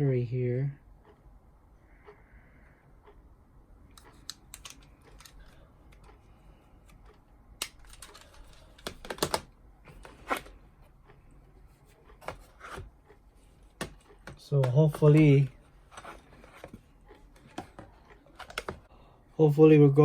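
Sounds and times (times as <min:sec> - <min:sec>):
sharp plastic clicks: 0:03.9 - 0:06.2, 0:06.8 - 0:10.6.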